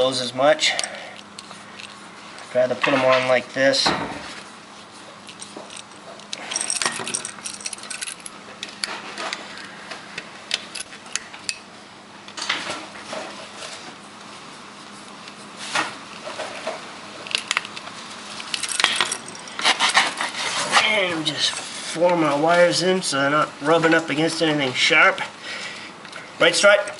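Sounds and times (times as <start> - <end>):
metallic clicks and clinks: 5.3 - 8.3.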